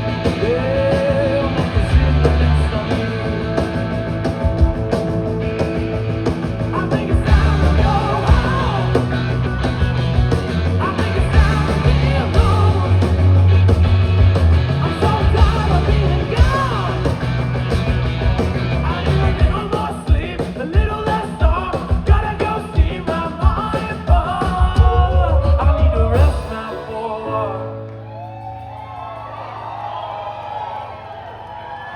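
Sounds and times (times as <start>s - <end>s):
rock band playing: 0.0s - 27.5s
person singing: 6.7s - 9.8s, 10.8s - 13.6s, 14.8s - 17.2s, 18.8s - 28.1s.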